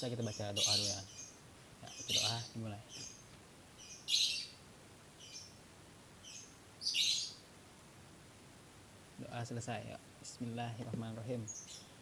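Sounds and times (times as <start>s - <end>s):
bird chirping: 0.0s - 5.6s, 6.2s - 7.5s, 11.0s - 12.0s.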